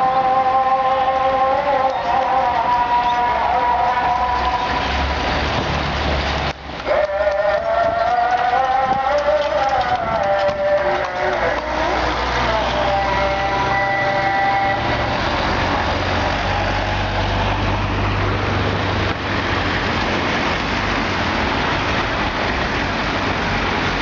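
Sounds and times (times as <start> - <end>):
call to prayer singing: 0.0 - 5.6, 6.2 - 19.3
loud rush of noise: 0.0 - 24.0.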